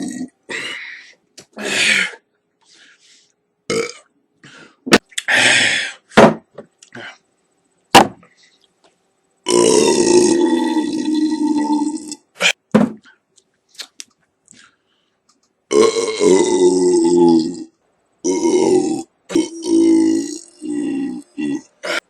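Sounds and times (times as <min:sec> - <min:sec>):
person belching: 0:00.0 - 0:00.4, 0:03.7 - 0:04.1, 0:09.4 - 0:12.5, 0:15.7 - 0:22.0.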